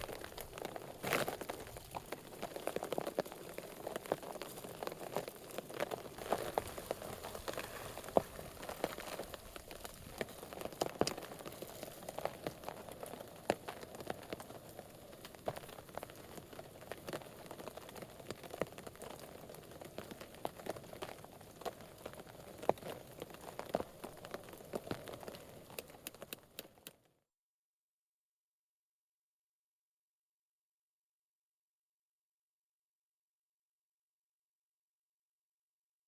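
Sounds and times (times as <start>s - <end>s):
rain on a tarp: 0.0s - 27.0s.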